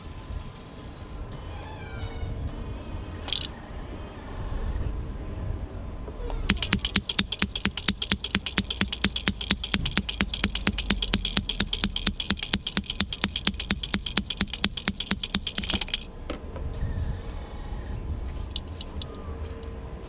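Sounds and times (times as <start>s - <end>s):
hammer breaker pounding concrete: 6.5s - 16.1s.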